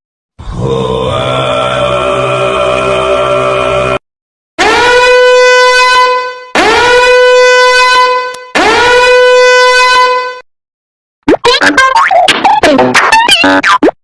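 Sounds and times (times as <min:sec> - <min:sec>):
low droning chant-like sound: 0:00.4 - 0:04.0
horn blast sound effect: 0:04.6 - 0:10.4.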